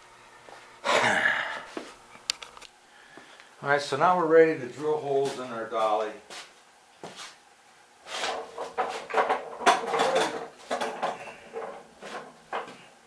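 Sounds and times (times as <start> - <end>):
wood and metal pieces clattering: 8.4 - 12.8.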